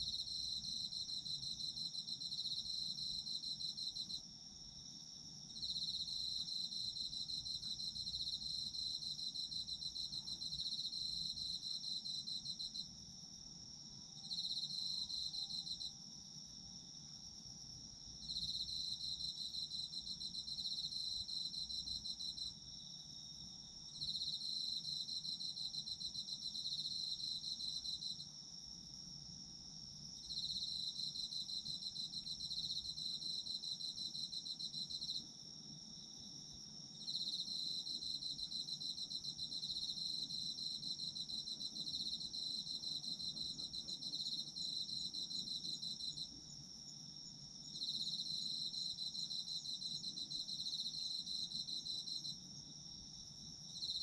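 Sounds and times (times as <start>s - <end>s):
insect continuous high trill: 0.0s - 54.0s.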